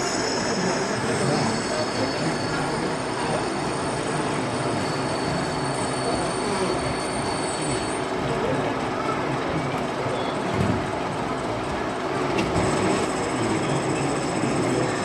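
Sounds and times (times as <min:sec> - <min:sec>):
exhibition hall background noise: 0:00.0 - 0:15.0
model train whine: 0:00.0 - 0:15.0.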